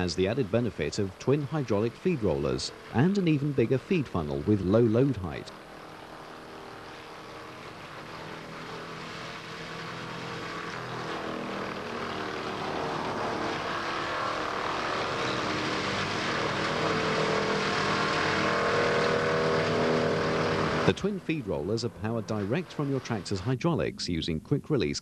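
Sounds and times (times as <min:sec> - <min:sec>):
tractor engine running: 0:00.0 - 0:23.5
wood chipper: 0:07.1 - 0:21.0.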